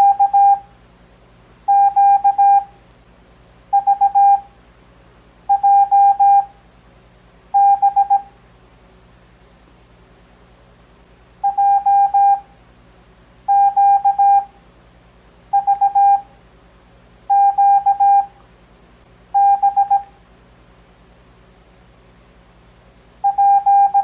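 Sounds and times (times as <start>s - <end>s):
morse code beeps: 0.0s - 0.6s, 1.7s - 2.7s, 3.7s - 4.4s, 5.5s - 6.5s, 7.6s - 8.3s, 11.4s - 12.4s, 13.5s - 14.5s, 15.6s - 16.2s, 17.3s - 18.3s, 19.4s - 20.1s, 23.2s - 24.0s.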